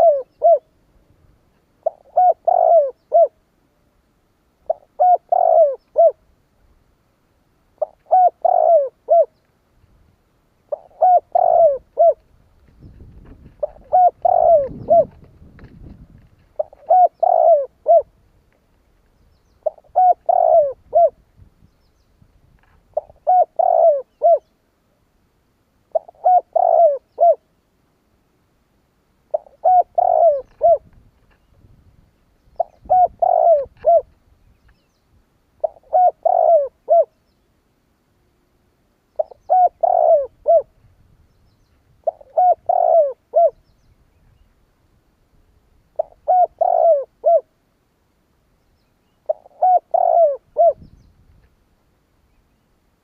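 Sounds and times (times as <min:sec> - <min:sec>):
dove cooing: 0:00.0 - 0:00.8, 0:01.8 - 0:03.4, 0:04.6 - 0:06.2, 0:07.8 - 0:09.4, 0:10.7 - 0:12.2, 0:12.9 - 0:15.3, 0:16.6 - 0:18.2, 0:19.6 - 0:21.2, 0:22.9 - 0:24.5, 0:25.9 - 0:27.4, 0:29.3 - 0:30.9, 0:32.6 - 0:34.1, 0:35.6 - 0:37.2, 0:39.2 - 0:40.8, 0:42.0 - 0:43.6, 0:46.0 - 0:47.5, 0:49.2 - 0:51.0.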